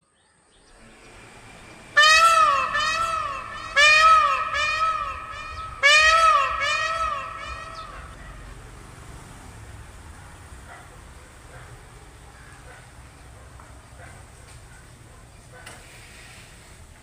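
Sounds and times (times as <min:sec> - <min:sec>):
peacock calling: 0:00.7 - 0:08.8.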